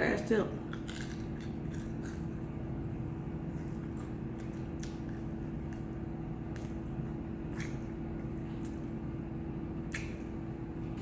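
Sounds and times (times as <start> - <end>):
steady low hum: 0.0 - 11.0
close-up chewing: 0.7 - 8.9
wet mouth clicks and smacks: 6.5 - 8.8, 9.9 - 10.4.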